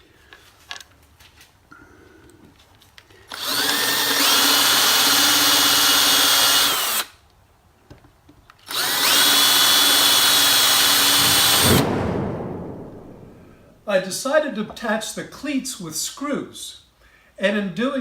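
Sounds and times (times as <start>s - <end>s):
power drill motor whine: 3.3s - 7.1s, 8.6s - 11.8s.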